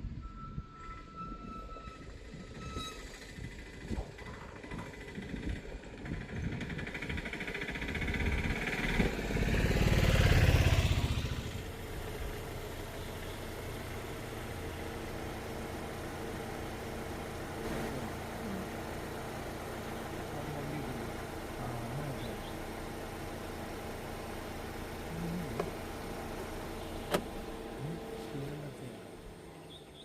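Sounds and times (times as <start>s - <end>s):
low engine hum: 0.0s - 30.0s
vehicle passing by: 6.9s - 14.2s.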